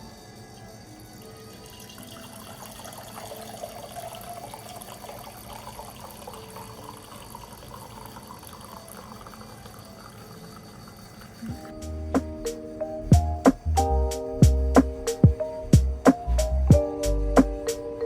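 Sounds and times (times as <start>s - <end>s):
quiet background music: 0.0s - 18.0s
water running: 1.0s - 11.8s.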